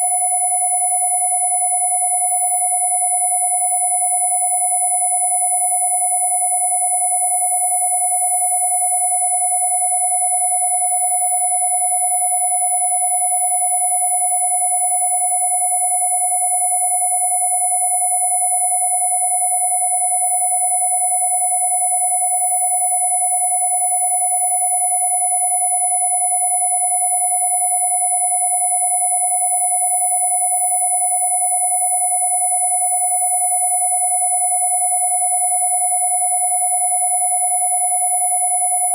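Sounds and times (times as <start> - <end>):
high-pitched electronic whistle: 0.0 - 0.3
steady electronic sine tone: 0.0 - 38.9.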